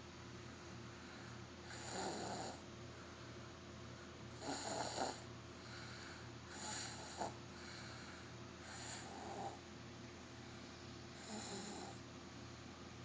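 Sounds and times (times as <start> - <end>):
person snoring: 1.1 - 2.6, 4.4 - 9.6, 11.2 - 12.0.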